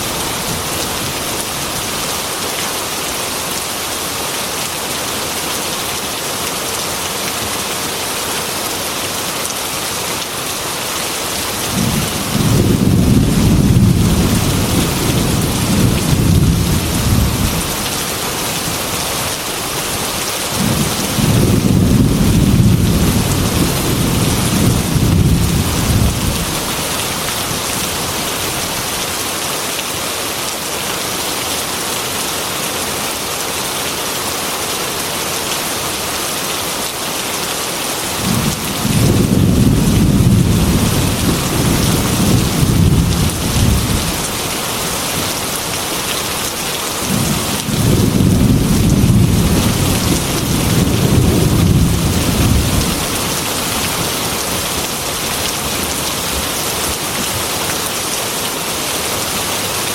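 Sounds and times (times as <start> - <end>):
heavy rain on a window: 0.0 - 59.9
thunder rumbling: 11.7 - 17.9, 20.6 - 27.3, 38.2 - 45.0, 47.0 - 53.3.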